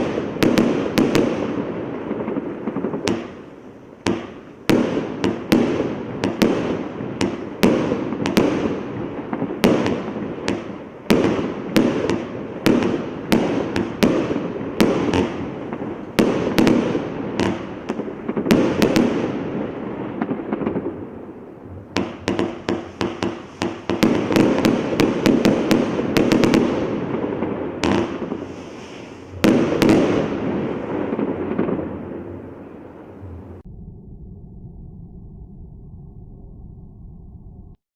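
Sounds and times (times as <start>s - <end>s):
fireworks barrage firing: 0.0s - 33.7s.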